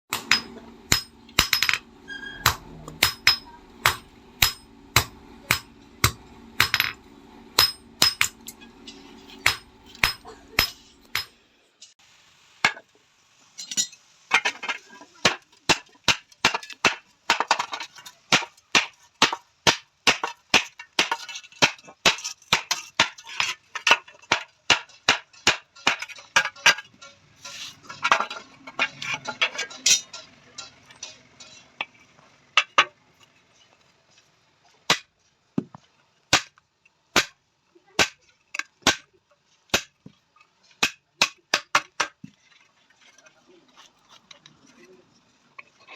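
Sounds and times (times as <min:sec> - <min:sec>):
hammer striking sheet iron: 0:00.1 - 0:01.8, 0:02.4 - 0:07.0, 0:07.6 - 0:11.4, 0:18.3 - 0:26.8
steady low hum: 0:00.1 - 0:11.6.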